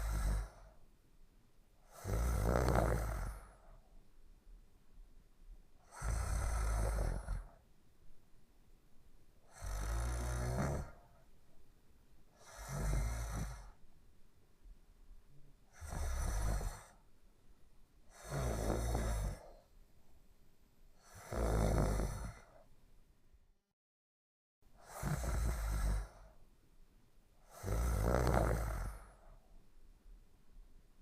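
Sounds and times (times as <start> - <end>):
loud snores: 0.0 - 0.8, 1.8 - 3.8, 5.8 - 7.6, 9.5 - 11.2, 12.4 - 13.8, 15.7 - 17.0, 18.1 - 19.7, 21.0 - 22.6, 24.8 - 26.4, 27.4 - 29.3
quiet breathing: 0.0 - 1.0, 1.7 - 14.0, 14.6 - 17.3, 18.0 - 20.2, 20.9 - 22.8, 24.7 - 26.5, 27.3 - 31.0.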